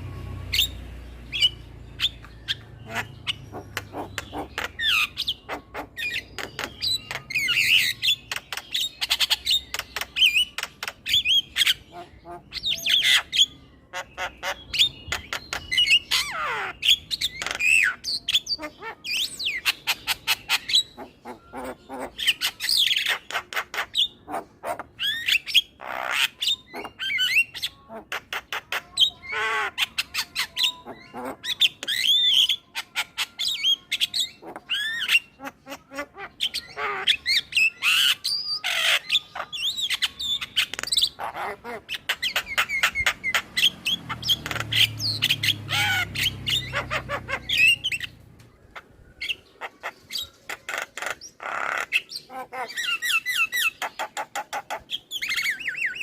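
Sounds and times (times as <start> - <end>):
myna chattering: 2.5 - 7.6.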